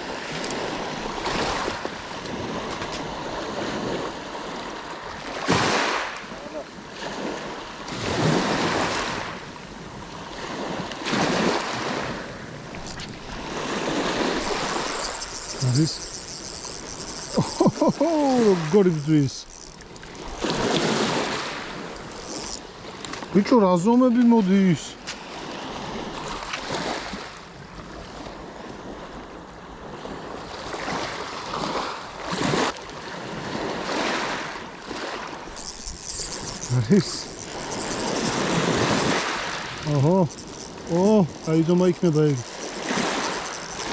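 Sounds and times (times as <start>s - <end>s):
sea waves washing onto shore: 17.8s - 23.1s, 36.6s - 43.9s.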